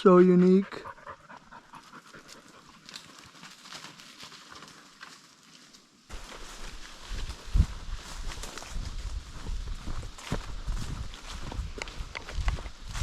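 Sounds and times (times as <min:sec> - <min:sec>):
dog panting: 0:00.1 - 0:03.3
wind rumble on microphone: 0:06.6 - 0:13.0.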